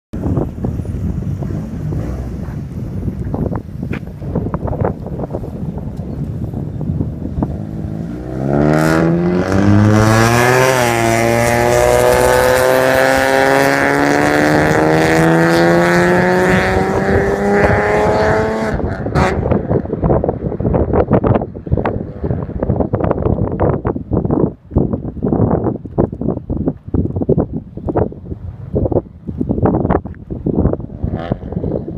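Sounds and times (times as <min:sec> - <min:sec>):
wind noise on microphone: 0:00.1 - 0:31.9
car exhaust accelerating: 0:00.2 - 0:24.4.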